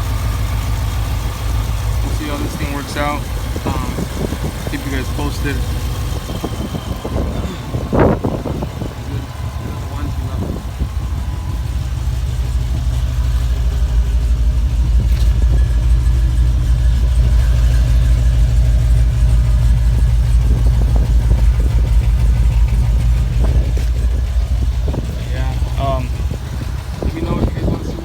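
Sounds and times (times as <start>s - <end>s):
truck engine idling deep rumble: 0.0s - 28.0s.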